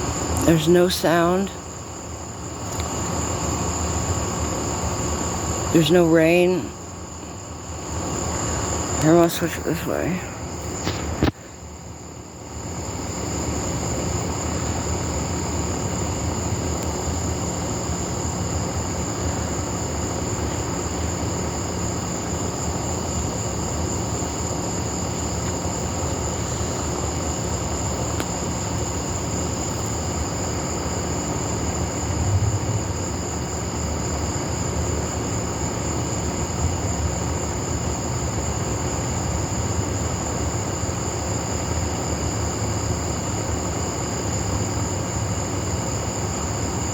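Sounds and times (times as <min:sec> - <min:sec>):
night insects chirping: 0:00.0 - 0:46.9
low rumble: 0:32.0 - 0:33.7.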